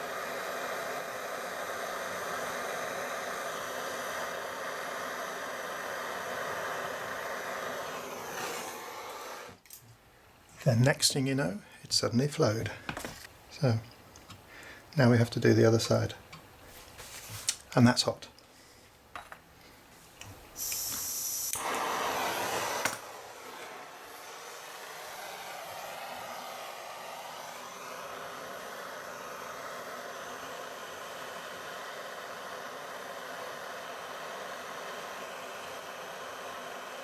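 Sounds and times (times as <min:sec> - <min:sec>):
blow lamp gas hiss: 0:00.0 - 0:09.6, 0:10.2 - 0:37.0
blow lamp lighting burst: 0:00.0 - 0:09.7, 0:20.2 - 0:37.0
flame burning with steady hiss: 0:00.0 - 0:37.0.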